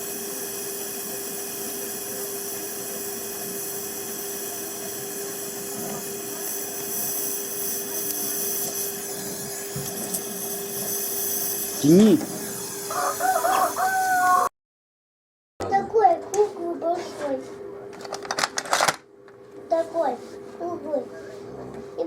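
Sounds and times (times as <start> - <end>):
mechanical hum with hiss: 0.0 - 14.5, 19.3 - 22.0.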